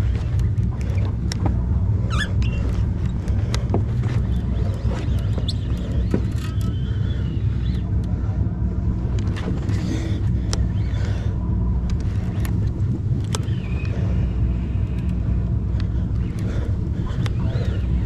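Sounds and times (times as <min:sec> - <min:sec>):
boat engine droning: 0:00.0 - 0:18.0
light clicks: 0:11.8 - 0:14.0.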